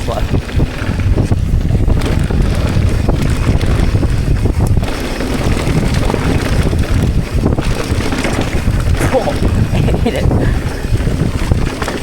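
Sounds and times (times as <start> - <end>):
bike knocks and rattles: 0.0 - 12.0
wind rumble on microphone: 0.0 - 12.0.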